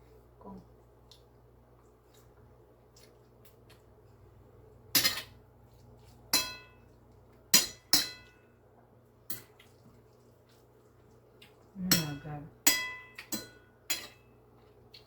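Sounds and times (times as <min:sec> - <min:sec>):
utensil clinking on a dish: 0:04.9 - 0:05.4, 0:06.3 - 0:08.5, 0:11.9 - 0:14.4.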